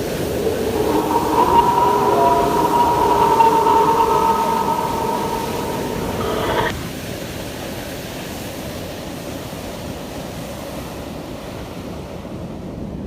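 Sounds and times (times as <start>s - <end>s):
high screech of ship hull: 0.0s - 6.7s
low rumble: 0.0s - 6.7s
sea and wind rushing: 0.0s - 6.7s.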